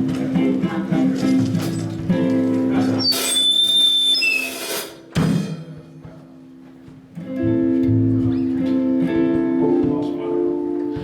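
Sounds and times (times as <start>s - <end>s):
live band with guitar and drums: 0.0s - 11.0s
sharp drum hit: 4.4s - 5.9s.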